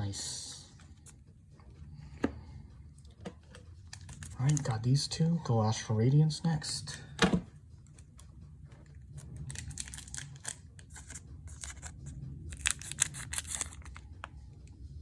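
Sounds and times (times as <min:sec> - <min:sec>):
foil wrapper crinkling and tearing: 0:03.9 - 0:04.7, 0:09.4 - 0:14.1.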